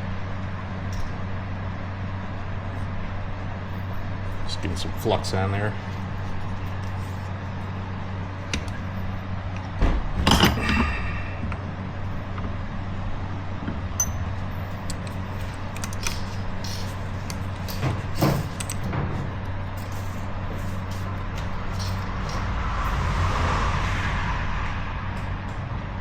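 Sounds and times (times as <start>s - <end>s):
steady low hum: 0.0s - 26.0s
metal tools clinking: 14.0s - 22.5s.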